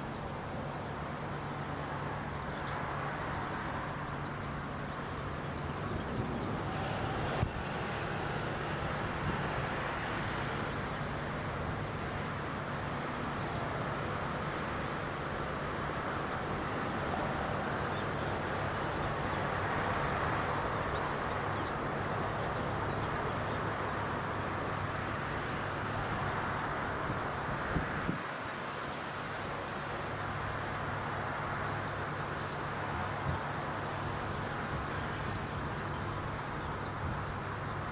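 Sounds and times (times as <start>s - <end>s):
combine harvester engine hum: 0.0s - 28.2s.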